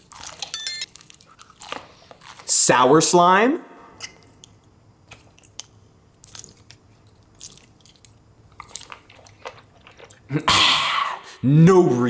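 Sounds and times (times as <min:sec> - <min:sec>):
person chewing candy: 0:00.0 - 0:02.5, 0:04.0 - 0:10.5.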